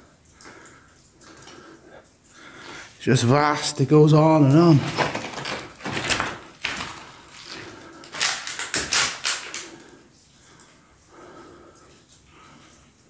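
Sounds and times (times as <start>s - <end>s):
footsteps crunching on stone: 4.4s - 9.6s.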